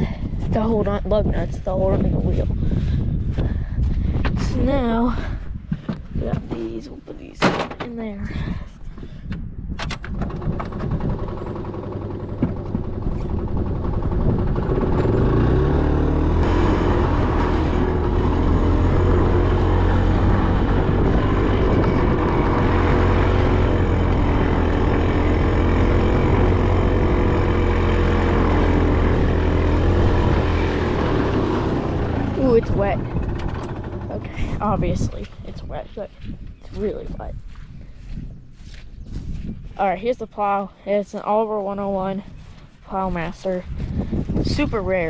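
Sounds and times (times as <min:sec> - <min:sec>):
engine running: 0:09.9 - 0:45.0.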